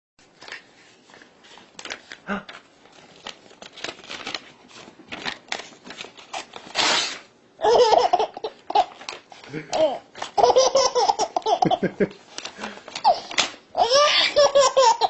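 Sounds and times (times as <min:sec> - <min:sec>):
paper crinkling: 0:00.2 - 0:07.3, 0:12.2 - 0:13.6
paper ripping: 0:01.8 - 0:07.3
baby laughing: 0:07.6 - 0:09.0, 0:09.7 - 0:12.0, 0:13.0 - 0:15.0.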